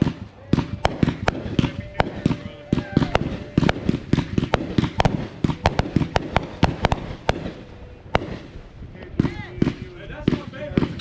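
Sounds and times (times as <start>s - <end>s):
fireworks bangs and cracks: 0.0s - 8.6s.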